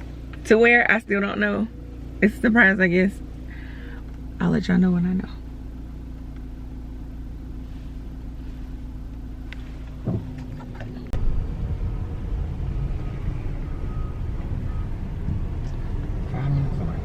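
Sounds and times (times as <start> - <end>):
car road and engine rumble: 0.0 - 17.0.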